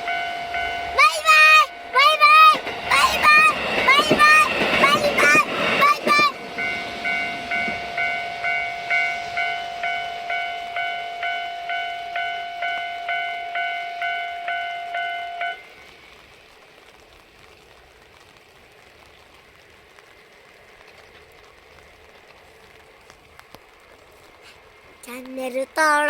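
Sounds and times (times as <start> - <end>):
level-crossing alarm ringing: 0.0 - 15.7.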